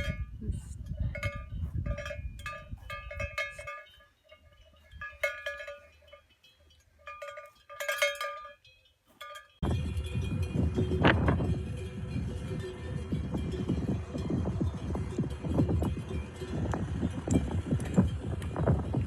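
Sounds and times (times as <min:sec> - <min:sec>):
livestock bells clanking: 0:00.0 - 0:19.0.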